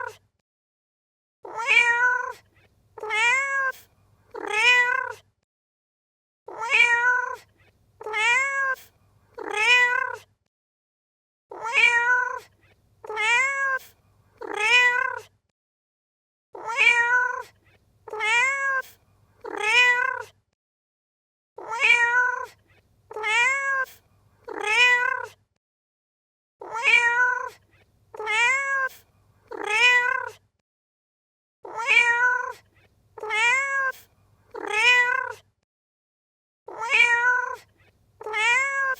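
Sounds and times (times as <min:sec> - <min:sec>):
cat meowing: 0:01.4 - 0:02.4, 0:03.0 - 0:05.2, 0:06.5 - 0:10.3, 0:11.5 - 0:15.3, 0:16.6 - 0:20.3, 0:21.6 - 0:25.4, 0:26.6 - 0:30.4, 0:31.7 - 0:35.4, 0:36.7 - 0:38.9.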